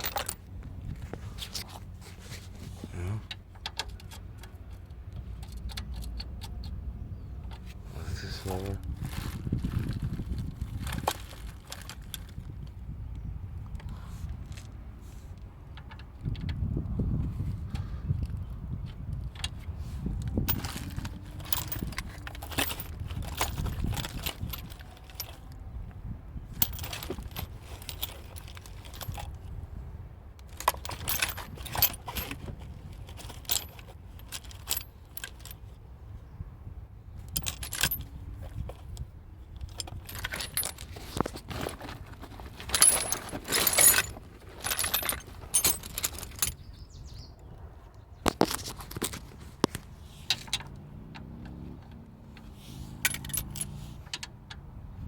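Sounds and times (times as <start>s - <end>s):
metal tools clinking: 0.0s - 6.7s, 19.3s - 25.6s, 26.6s - 29.4s, 30.4s - 35.7s, 37.2s - 46.9s, 52.4s - 54.4s.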